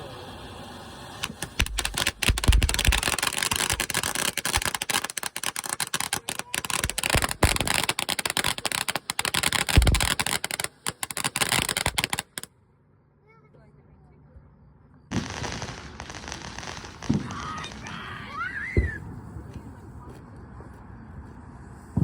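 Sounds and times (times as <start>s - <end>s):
firework crackling: 0.0s - 12.5s, 15.1s - 20.0s
heavy firework thumps: 1.2s - 4.0s, 9.7s - 10.1s, 15.2s - 17.9s, 18.7s - 19.8s.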